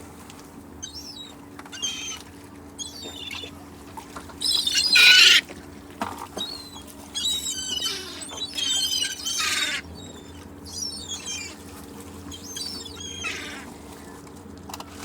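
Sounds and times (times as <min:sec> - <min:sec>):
low shore background noise: 0:00.0 - 0:15.0
gulls squawking: 0:00.8 - 0:03.7, 0:04.4 - 0:05.5, 0:06.4 - 0:14.0.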